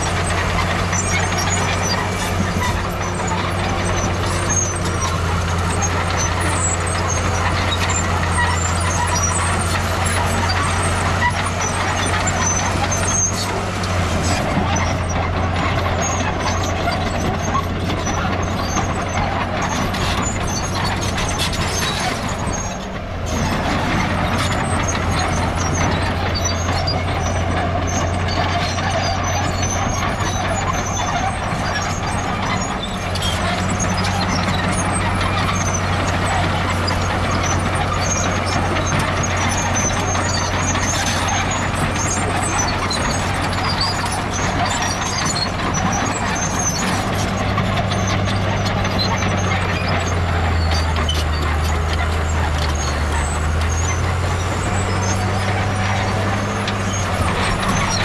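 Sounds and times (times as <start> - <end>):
diesel engine running under load: 0.0 - 58.0
metallic squeaks and clinks: 0.1 - 58.0.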